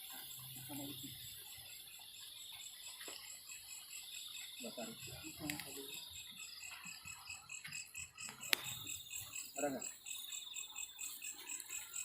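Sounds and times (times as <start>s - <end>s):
crickets chirping: 0.0s - 12.0s
click: 8.3s - 8.7s.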